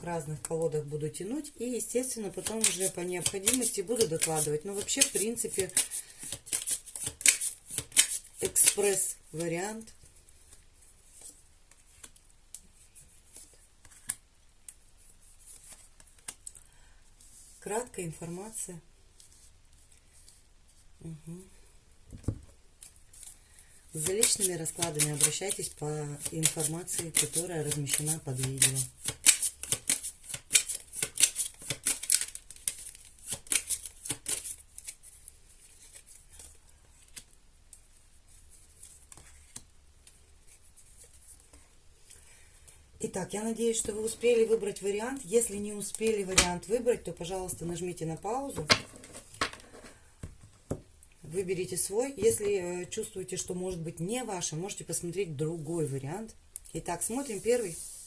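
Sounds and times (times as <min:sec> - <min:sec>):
cards clicking and snapping: 0:02.4 - 0:08.9, 0:26.2 - 0:35.0.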